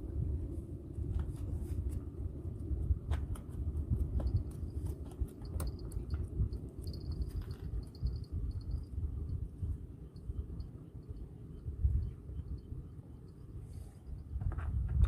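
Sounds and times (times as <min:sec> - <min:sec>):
cricket chirping: 0:05.4 - 0:14.4.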